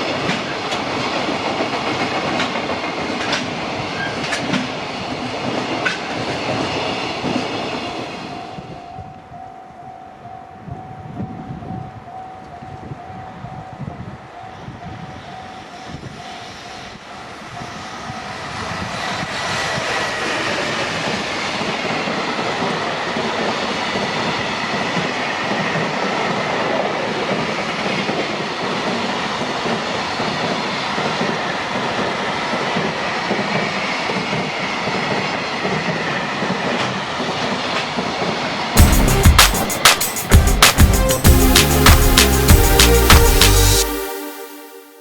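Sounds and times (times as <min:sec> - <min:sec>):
train wheels rumbling and clacking: 0:00.0 - 0:08.3, 0:17.7 - 0:42.5
level crossing warning bell: 0:08.3 - 0:18.5
steady high-pitched tone: 0:38.8 - 0:45.0.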